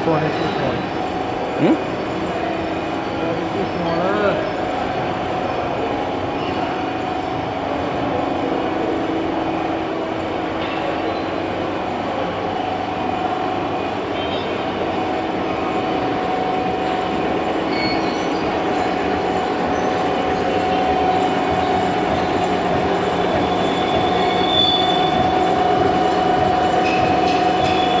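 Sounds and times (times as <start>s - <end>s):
milling machine humming: 0.0s - 7.8s, 14.6s - 28.0s.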